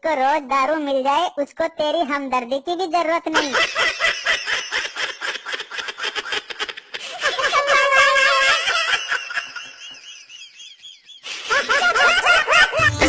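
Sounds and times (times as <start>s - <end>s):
person laughing: 3.4s - 13.0s.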